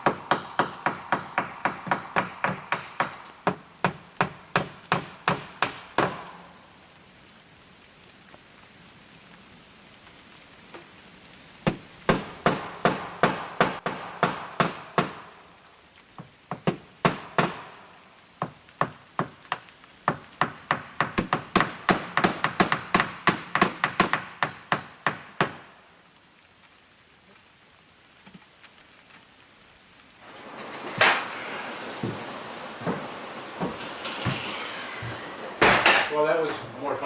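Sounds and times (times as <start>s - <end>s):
hammer striking nails: 0.0s - 6.4s, 11.6s - 15.3s, 16.5s - 17.8s, 18.4s - 25.6s, 30.9s - 36.2s.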